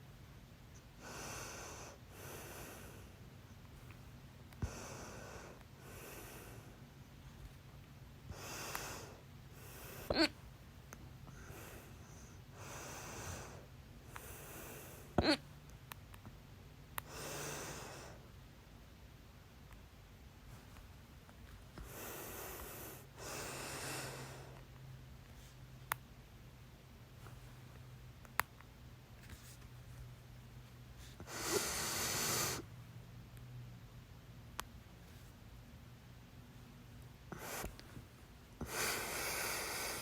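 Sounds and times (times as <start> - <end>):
heavy breathing: 1.0 - 3.2, 4.6 - 6.8, 8.3 - 10.4, 11.3 - 15.4, 17.0 - 18.3, 21.8 - 24.7, 31.0 - 32.7, 37.3 - 40.0
woman hiccuping: 15.2 - 15.4.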